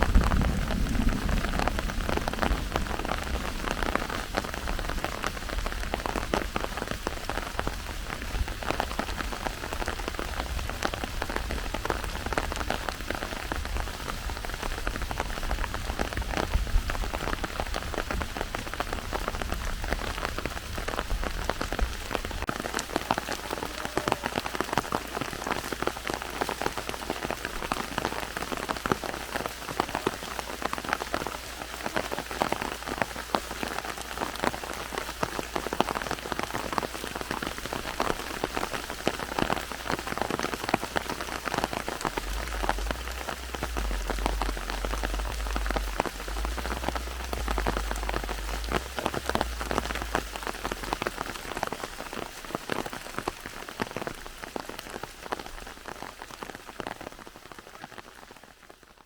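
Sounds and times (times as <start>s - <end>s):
deep low rumble: 0.0s - 21.4s, 41.8s - 52.0s
heavy rain pattering on leaves: 0.0s - 59.0s.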